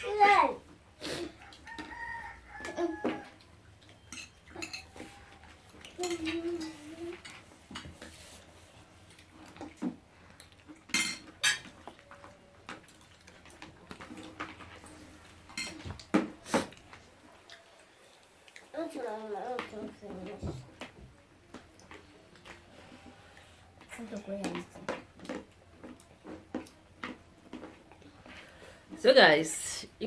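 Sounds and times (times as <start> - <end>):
cutlery clinking on plates: 1.8 - 8.0, 10.5 - 14.7, 15.5 - 16.8.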